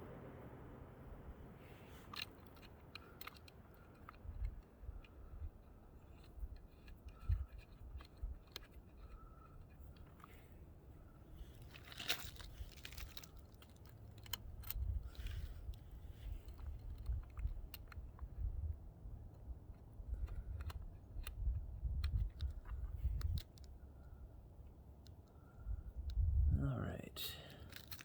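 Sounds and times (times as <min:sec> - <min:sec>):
small metal clicks and taps: 0:01.9 - 0:10.5, 0:11.4 - 0:26.2, 0:27.5 - 0:28.0
gritty crunching scrapes: 0:06.0 - 0:17.8.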